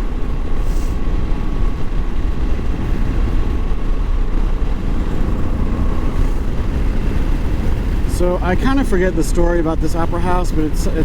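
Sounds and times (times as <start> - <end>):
motorcycle engine droning: 0.0 - 11.0
wind noise: 0.0 - 11.0.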